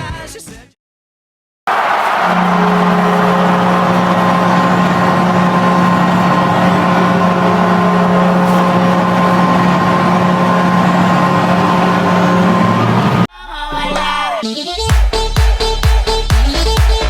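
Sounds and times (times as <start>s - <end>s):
goal horn blast: 1.7s - 13.3s.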